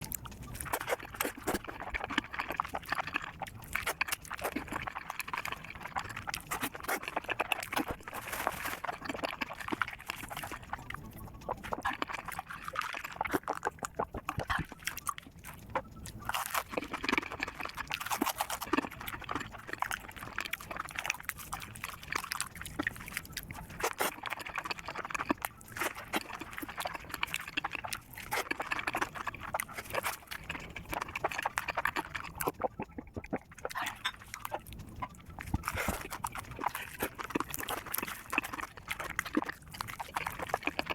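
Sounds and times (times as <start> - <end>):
chewing with wet mouth smacking: 0.0 - 40.9.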